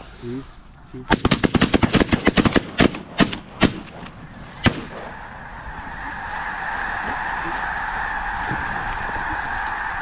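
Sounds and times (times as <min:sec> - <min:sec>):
shotgun shots: 0:01.1 - 0:05.1.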